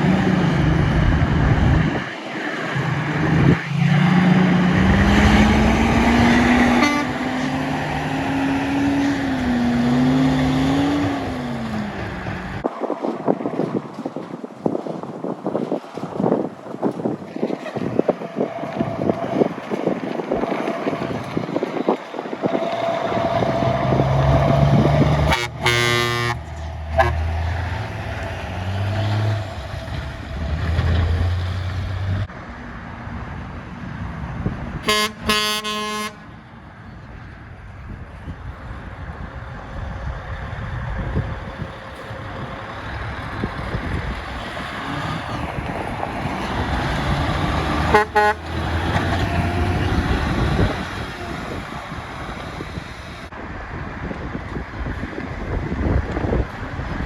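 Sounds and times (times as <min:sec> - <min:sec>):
trucks passing in traffic: 0:00.0 - 0:57.0
truck horn honks: 0:04.9 - 0:11.2, 0:24.7 - 0:27.5, 0:34.8 - 0:36.3, 0:47.7 - 0:51.5.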